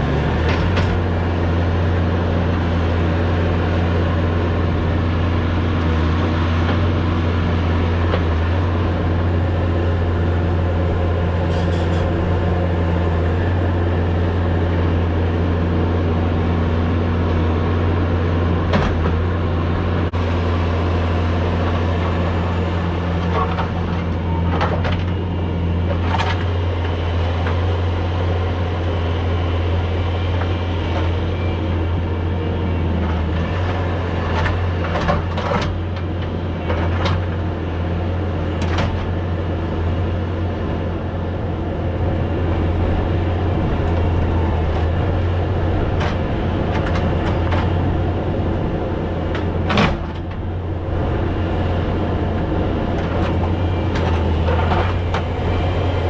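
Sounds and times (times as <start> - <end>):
diesel engine running under load: 0.0 - 56.0
knocks and scrapes in rocky soil: 4.5 - 13.8, 49.2 - 56.0.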